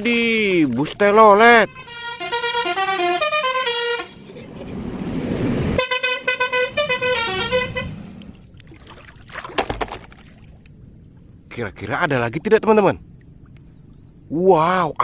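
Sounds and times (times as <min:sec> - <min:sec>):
bus horn playing a tune: 0:01.6 - 0:08.3
rushing noise: 0:03.4 - 0:08.4.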